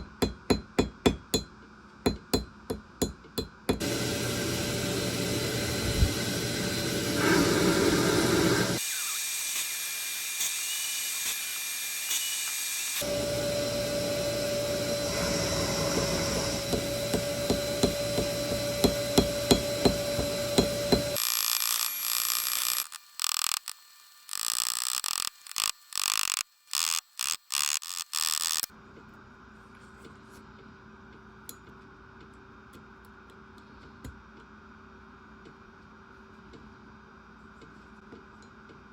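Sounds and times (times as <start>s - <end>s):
power tool working on metal: 3.8s - 28.7s.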